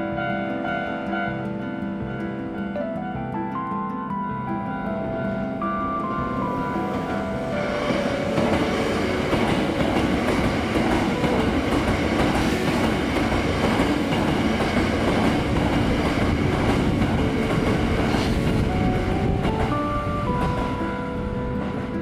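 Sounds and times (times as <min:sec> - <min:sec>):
electric train passing: 0:00.0 - 0:22.0
train wheels clattering over rail joints: 0:07.8 - 0:19.6.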